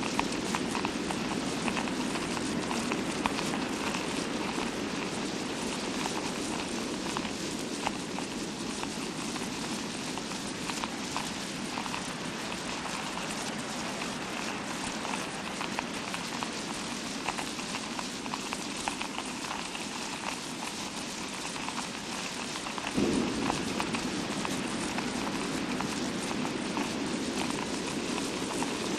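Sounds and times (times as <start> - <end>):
fake rain patter: 0.0 - 28.9.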